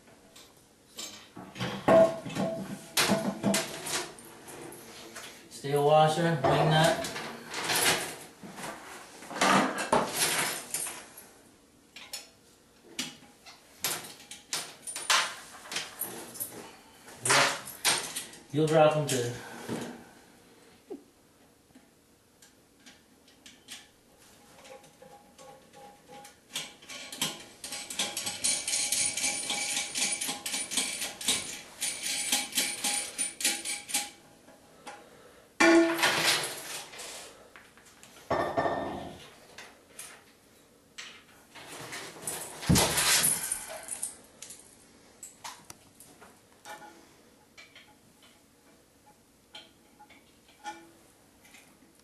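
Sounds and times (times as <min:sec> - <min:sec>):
metal tools clinking and clicking: 0:24.6 - 0:34.2, 0:42.2 - 0:44.6.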